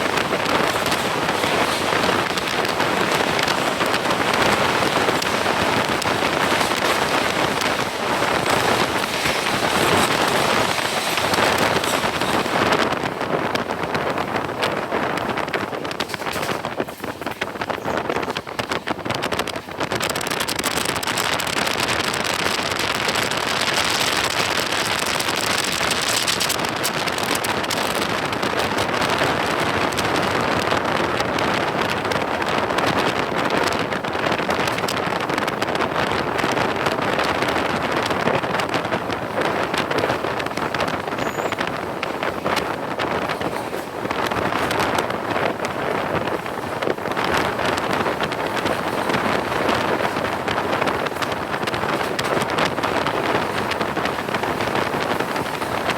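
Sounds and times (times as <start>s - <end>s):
train rushing roar: 0.0s - 55.9s
wind buffeting microphone: 0.0s - 55.9s.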